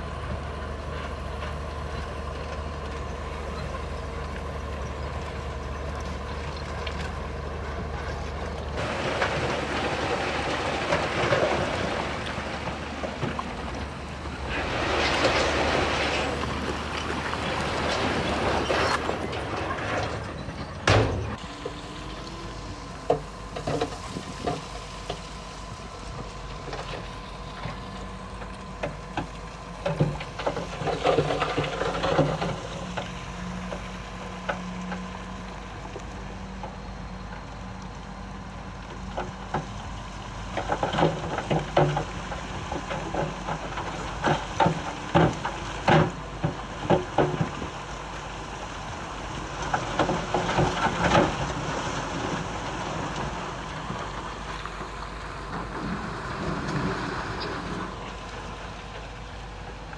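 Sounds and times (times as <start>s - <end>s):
heavy diesel machinery running: 0.0s - 59.9s
metallic clanks and knocks: 17.8s - 21.8s.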